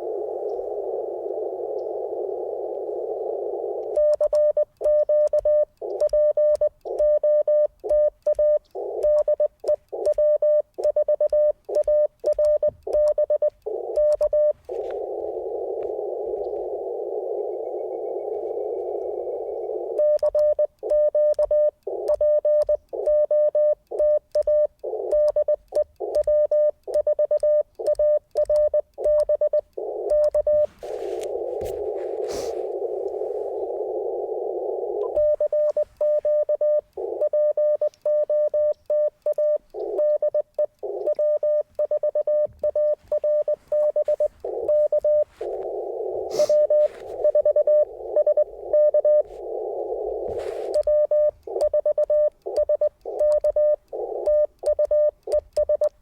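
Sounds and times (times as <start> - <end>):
radio receiver hiss: 0.0 - 4.1, 8.7 - 10.1, 12.5 - 20.2, 21.8 - 22.2, 24.8 - 25.3, 29.0 - 38.2, 39.2 - 55.4
morse code beeping: 3.1 - 56.0.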